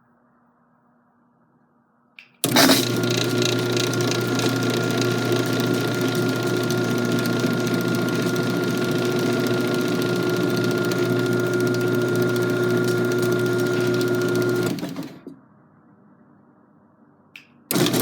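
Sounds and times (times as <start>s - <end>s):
garage door opener running: 2.4s - 15.4s, 17.7s - 18.0s.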